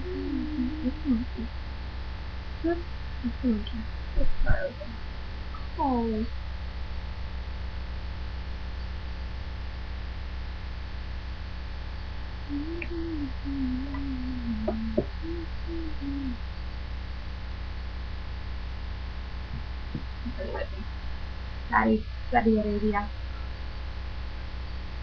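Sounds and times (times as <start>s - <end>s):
faint low wavering tone: 0.0s - 1.6s, 11.9s - 18.1s
electrical mains hum: 0.0s - 25.0s.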